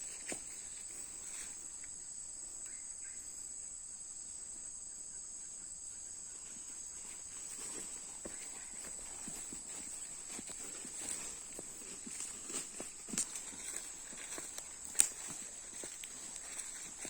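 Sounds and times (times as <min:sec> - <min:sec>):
footsteps on forest ground: 0:00.0 - 0:02.0, 0:06.4 - 0:17.0
insects chirping: 0:00.0 - 0:17.0.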